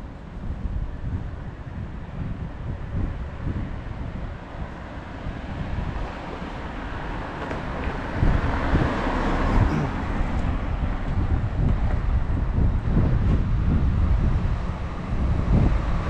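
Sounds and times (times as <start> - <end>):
street traffic: 0.0 - 16.0
wind buffeting microphone: 0.0 - 16.0
vehicle passing: 5.5 - 11.7.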